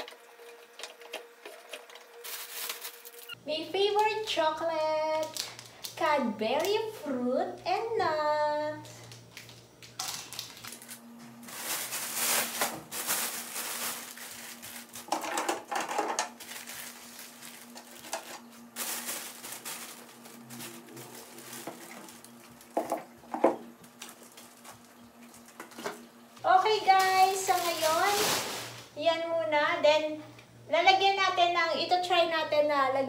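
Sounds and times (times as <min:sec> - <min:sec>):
food packs rustling and knocking: 0:09.4 - 0:26.0, 0:26.8 - 0:28.9.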